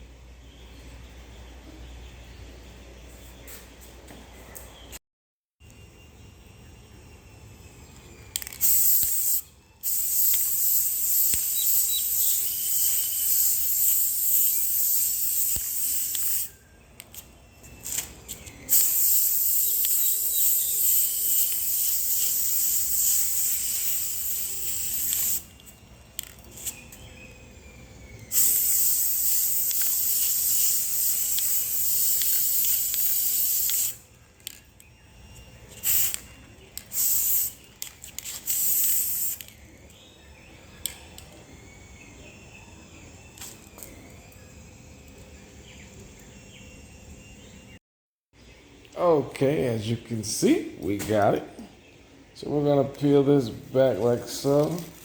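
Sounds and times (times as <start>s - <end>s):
aerosol spray can hissing: 8.4s - 16.6s, 17.9s - 25.7s, 28.2s - 34.0s, 35.7s - 39.7s.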